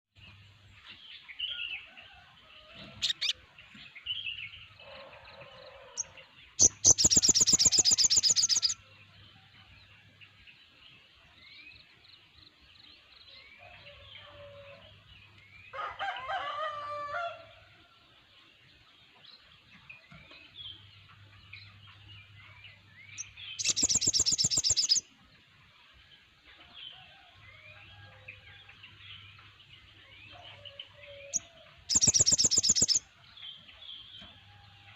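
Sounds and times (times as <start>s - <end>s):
birds chirping and twittering: 0.2s - 34.9s.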